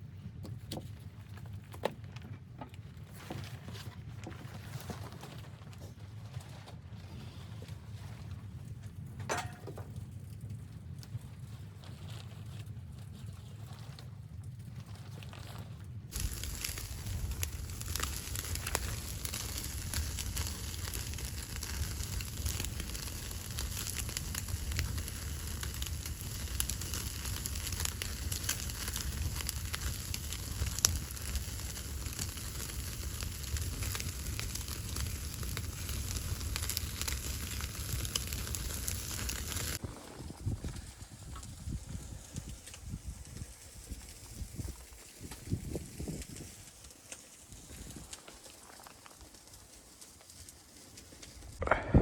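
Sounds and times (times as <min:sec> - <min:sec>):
wood fire crackling: 0:00.2 - 0:52.0
low rumble: 0:51.5 - 0:52.0.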